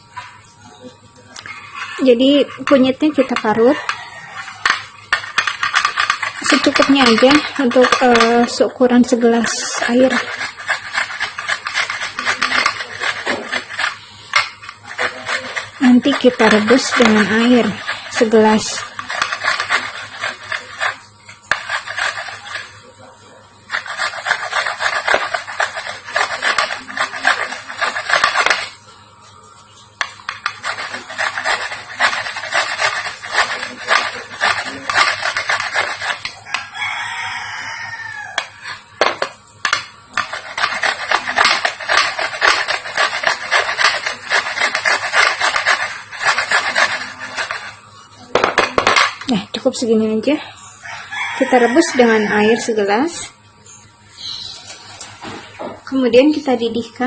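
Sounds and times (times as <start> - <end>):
root scraping on hand grater: 1.9 - 22.8, 23.7 - 28.8, 30.0 - 36.7, 38.3 - 47.8.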